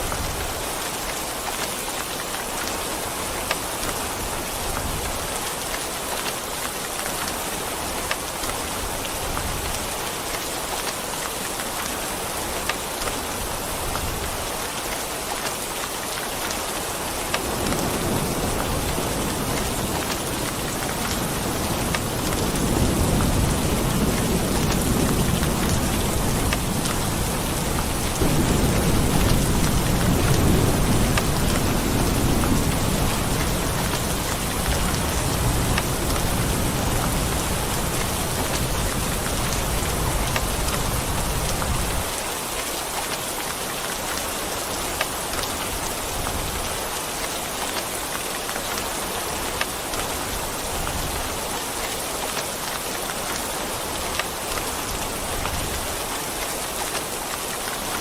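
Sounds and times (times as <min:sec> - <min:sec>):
heavy rain falling: 0:00.0 - 0:58.0
rumble of thunder: 0:17.5 - 0:42.1.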